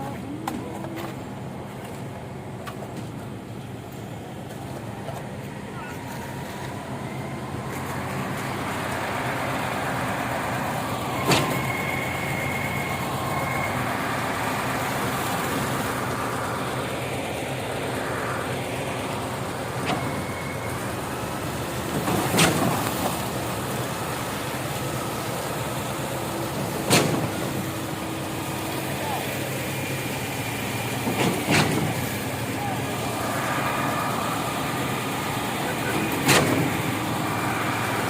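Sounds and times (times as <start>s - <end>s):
truck engine running: 0.0s - 38.0s.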